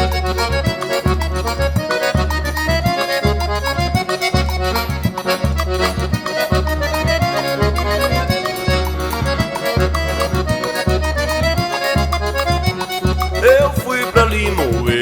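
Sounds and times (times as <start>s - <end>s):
accordion melody: 0.0s - 15.0s
steady low beat: 13.3s - 15.0s.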